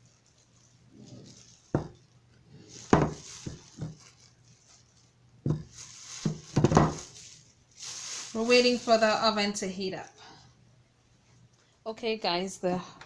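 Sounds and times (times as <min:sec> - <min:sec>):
dishes and utensils knocking: 0:02.9 - 0:04.0.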